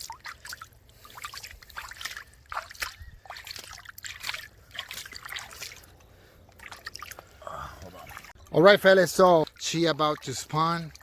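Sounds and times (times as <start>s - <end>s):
water trickling and splashing: 0.0s - 11.0s.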